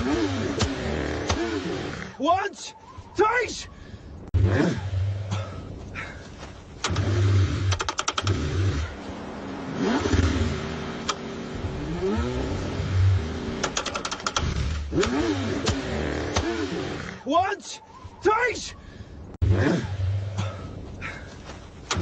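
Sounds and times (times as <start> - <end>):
car engine cranking: 0.0 - 2.2, 6.7 - 9.0, 9.7 - 17.3, 21.5 - 22.0
rapid clicking: 6.8 - 8.4, 13.6 - 16.5.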